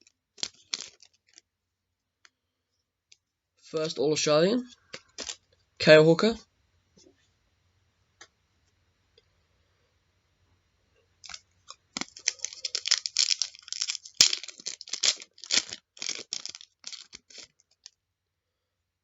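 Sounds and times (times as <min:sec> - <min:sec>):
wrapper tearing and crinkling: 0:00.4 - 0:01.4, 0:11.2 - 0:17.9.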